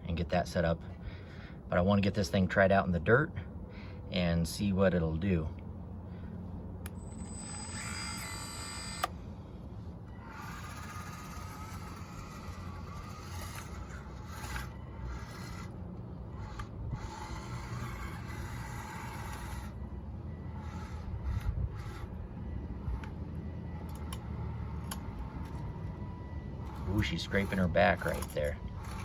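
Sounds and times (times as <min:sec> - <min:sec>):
low hum: 0:02.9 - 0:29.0
small electric motors whining: 0:06.8 - 0:29.0.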